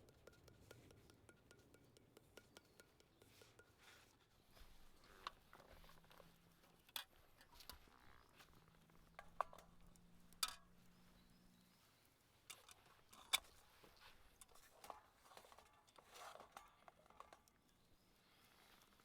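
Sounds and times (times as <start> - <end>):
sharp clicks and light knocks: 0.0 - 4.2, 5.2 - 10.8.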